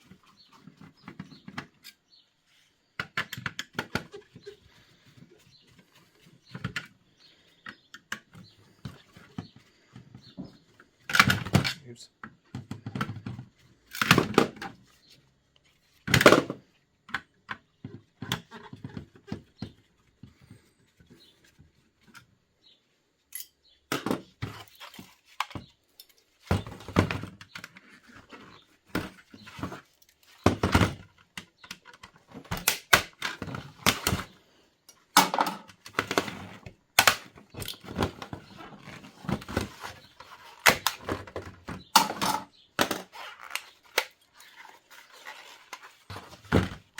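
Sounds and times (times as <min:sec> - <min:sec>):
clatter of parts being handled: 0:35.0 - 0:46.9.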